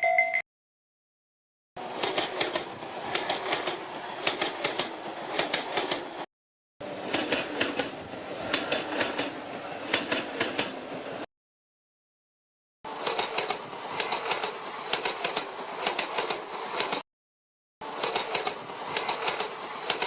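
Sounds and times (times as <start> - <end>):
train wheels clattering over rail joints: 1.8 - 6.2, 13.0 - 17.0, 17.9 - 20.0
train rumble: 1.8 - 11.2, 12.9 - 17.0, 17.8 - 20.0.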